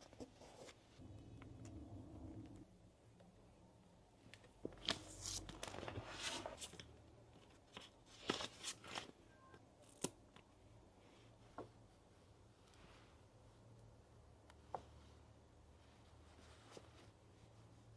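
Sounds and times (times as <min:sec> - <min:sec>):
paper rustling and crinkling: 0:04.6 - 0:09.2.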